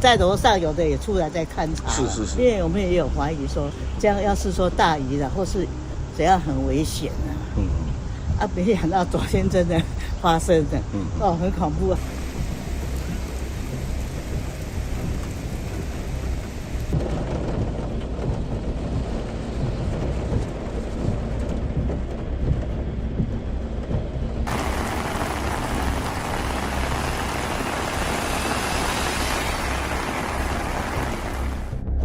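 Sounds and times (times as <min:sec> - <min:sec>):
heavy rain pouring: 0:11.9 - 0:22.2, 0:24.4 - 0:31.8.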